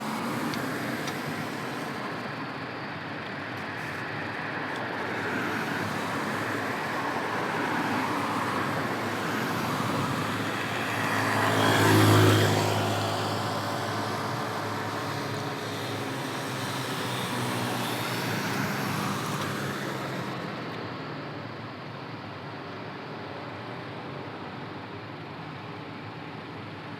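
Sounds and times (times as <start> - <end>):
road traffic noise: 0.0 - 26.9
vehicle engine passing by: 11.0 - 13.5.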